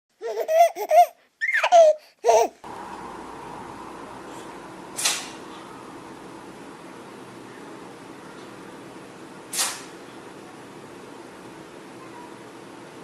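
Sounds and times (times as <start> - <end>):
steady hiss: 2.7 - 10.0
cat sneeze: 9.5 - 9.9.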